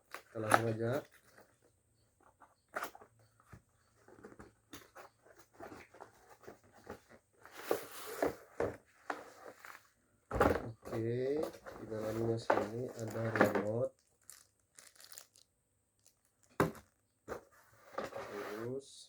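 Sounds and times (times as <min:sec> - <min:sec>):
cardboard packaging rustling: 0:10.9 - 0:15.4.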